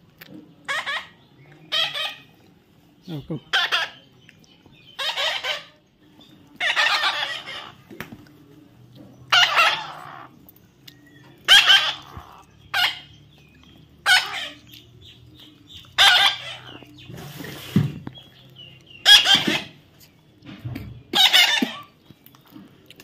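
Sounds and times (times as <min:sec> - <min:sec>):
baby parrot calling: 0:00.7 - 0:02.3, 0:03.5 - 0:04.0, 0:04.9 - 0:05.7, 0:06.6 - 0:07.8, 0:09.3 - 0:10.3, 0:11.5 - 0:13.2, 0:14.0 - 0:14.7, 0:16.0 - 0:16.9, 0:19.0 - 0:19.8, 0:21.1 - 0:22.0
soft rustle: 0:16.9 - 0:18.2.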